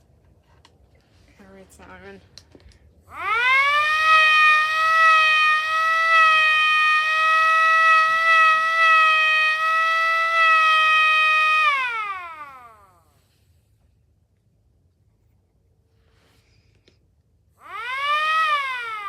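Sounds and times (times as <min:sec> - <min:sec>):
air-raid siren wailing: 0:03.1 - 0:13.2, 0:17.6 - 0:19.0.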